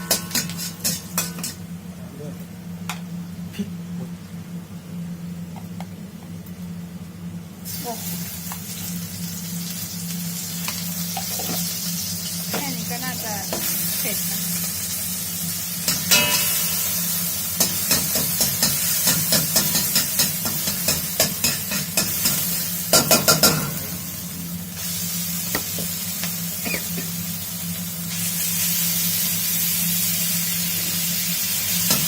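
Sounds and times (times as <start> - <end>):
steady low hum: 0.0 - 32.0
food sizzling in a hot pan: 7.6 - 32.0.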